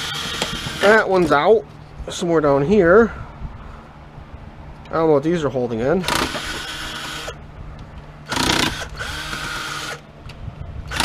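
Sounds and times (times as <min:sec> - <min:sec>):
cordless drill running: 0:00.0 - 0:01.1, 0:06.0 - 0:07.4, 0:08.3 - 0:10.0.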